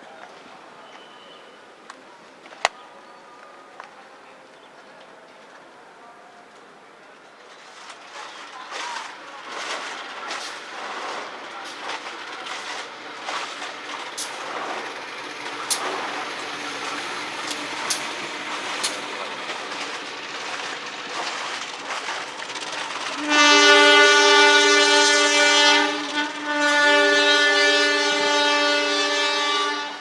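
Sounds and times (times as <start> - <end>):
train running on rails: 0.0 - 30.0
two-tone train horn: 9.5 - 20.6, 22.8 - 30.0
sharp rail clicks: 9.6 - 23.8.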